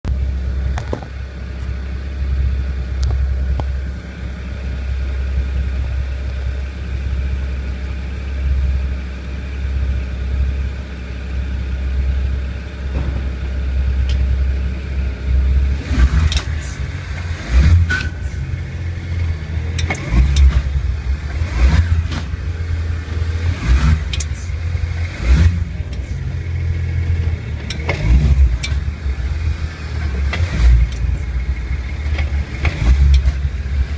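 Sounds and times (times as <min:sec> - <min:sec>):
car drone and rumble: 0:00.0 - 0:33.9.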